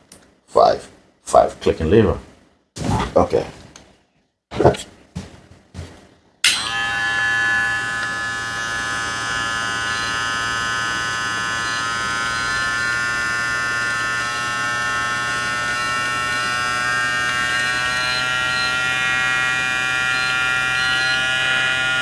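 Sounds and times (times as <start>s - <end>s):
hair clipper motor whine: 6.4s - 22.0s.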